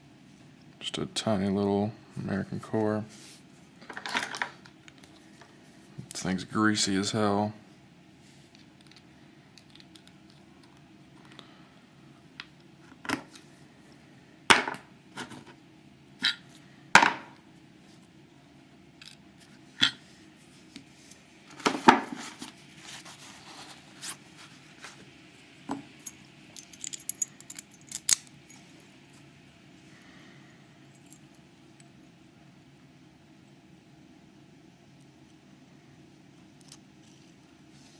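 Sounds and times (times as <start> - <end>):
padlock parts clicking: 26.6 - 28.3.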